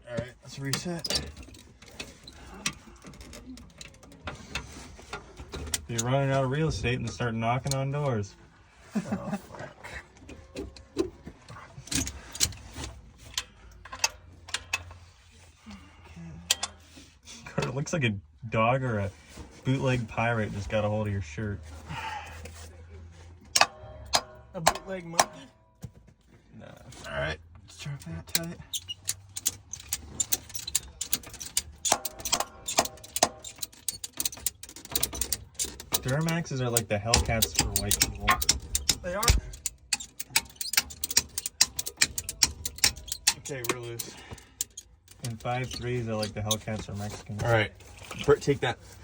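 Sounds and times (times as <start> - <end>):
metal tools clinking: 0.5 - 7.8, 10.3 - 15.0, 23.5 - 25.6, 28.0 - 49.0
short metallic rings: 23.5 - 25.6, 28.7 - 35.4
ratchet strap clicking: 28.2 - 46.6.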